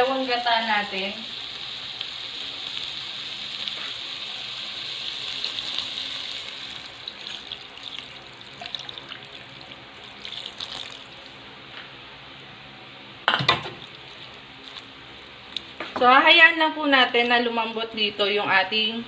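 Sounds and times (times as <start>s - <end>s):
coconut milk pouring into hot pan: 5.1s - 11.5s.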